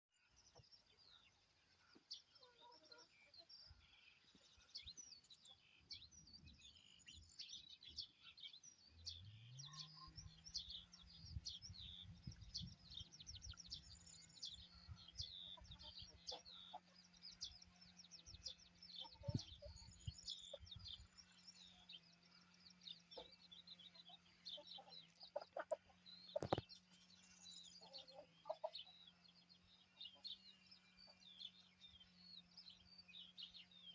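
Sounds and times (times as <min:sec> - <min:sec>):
birds chirping: 0:00.0 - 0:33.9.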